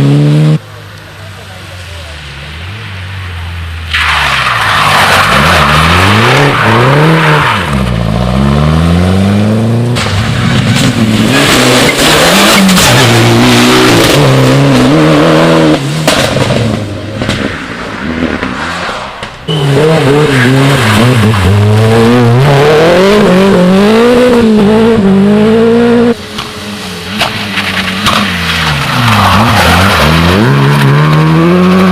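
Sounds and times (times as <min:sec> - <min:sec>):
rally car engines revving: 0:00.0 - 0:31.9.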